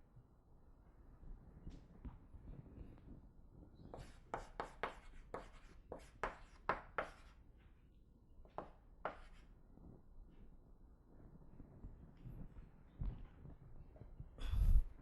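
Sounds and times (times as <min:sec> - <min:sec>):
writing strokes on a board: 0:03.8 - 0:07.4, 0:08.5 - 0:09.5.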